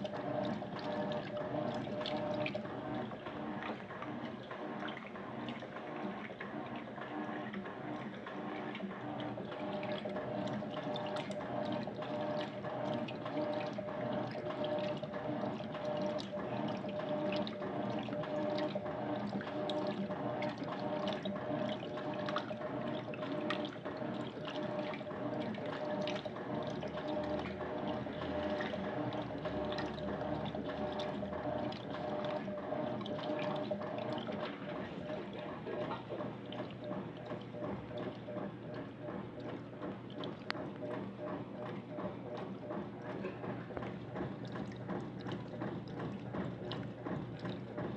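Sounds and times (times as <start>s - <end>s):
water splashing in washing machine: 0.0s - 47.9s.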